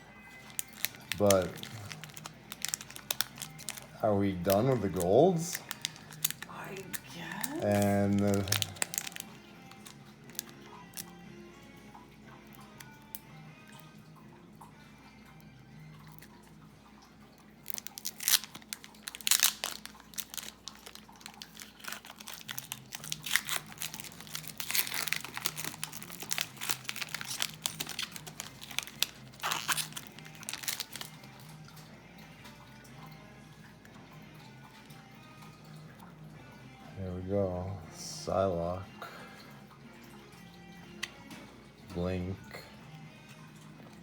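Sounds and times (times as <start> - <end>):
plastic wrapper tearing and crinkling: 0.2 - 11.1, 17.6 - 31.8.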